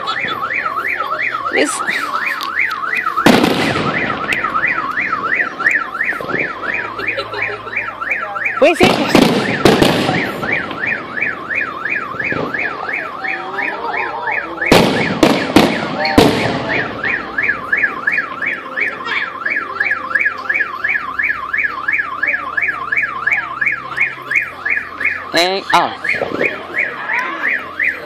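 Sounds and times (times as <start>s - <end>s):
car alarm siren warbling: 0.0s - 28.0s
firework bangs: 3.0s - 6.9s, 8.6s - 13.1s, 14.6s - 18.6s, 26.0s - 26.6s.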